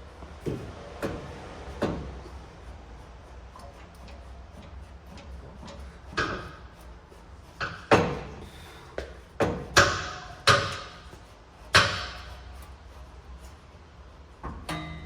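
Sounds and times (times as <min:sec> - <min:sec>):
metal knocks and clunks: 0:03.6 - 0:06.7, 0:07.6 - 0:08.4, 0:09.0 - 0:11.1, 0:14.4 - 0:15.0.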